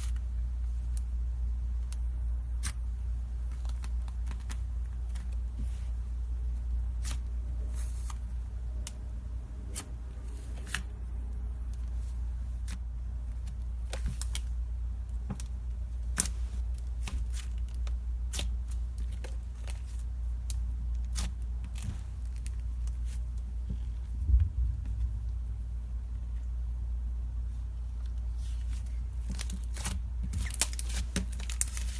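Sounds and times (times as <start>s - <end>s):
steady low hum: 0.0s - 31.9s.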